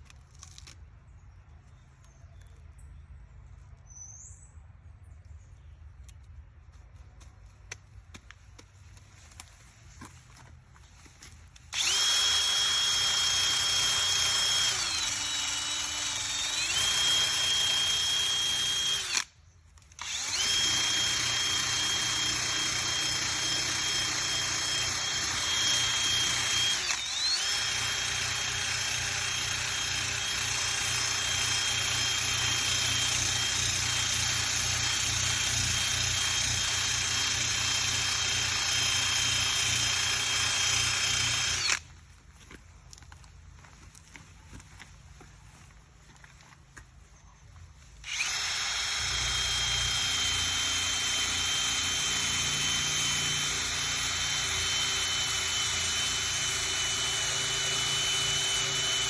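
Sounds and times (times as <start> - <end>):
electric drill sanding paint: 11.8 - 19.2, 20.0 - 41.8, 48.1 - 59.0.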